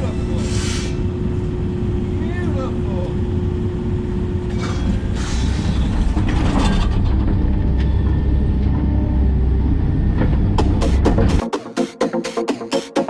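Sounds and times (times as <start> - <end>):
excavator diesel engine running: 5.5 - 11.4.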